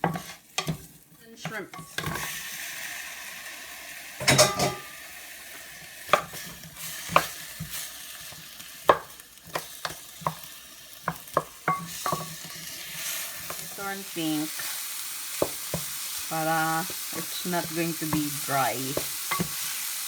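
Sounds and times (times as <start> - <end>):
utensil scraping a pan: 0.0 - 0.9, 11.1 - 13.9
shrimp sizzling in oil: 0.0 - 20.0.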